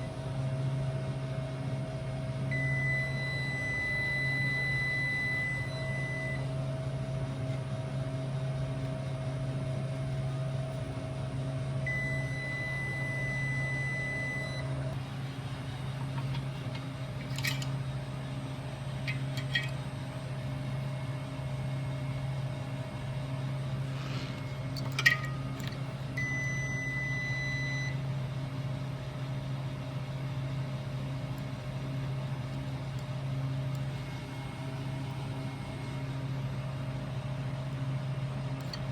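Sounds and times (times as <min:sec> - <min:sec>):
cooler fan motor humming: 0:00.0 - 0:38.9.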